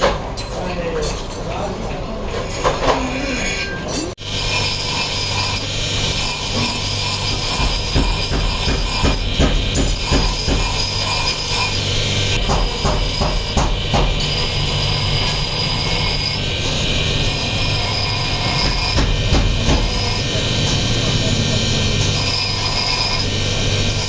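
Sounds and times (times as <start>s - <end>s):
machinery hum and hiss: 4.2s - 24.0s
sharp metal knocks: 6.2s - 20.2s.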